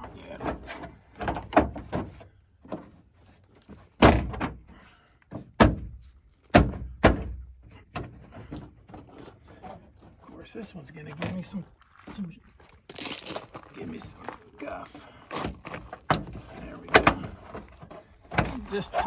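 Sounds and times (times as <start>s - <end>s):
plastic liner knocking on wheel arch: 5.6s - 7.4s
plastic scraping and rustling: 12.8s - 19.0s.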